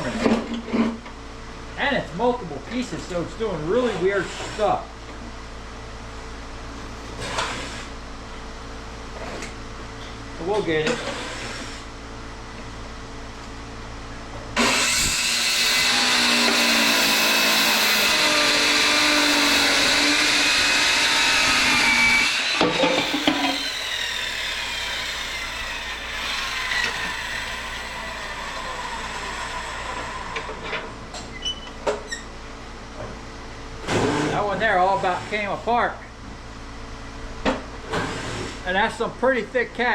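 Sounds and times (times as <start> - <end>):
power saw cutting metal: 14.6 - 30.8.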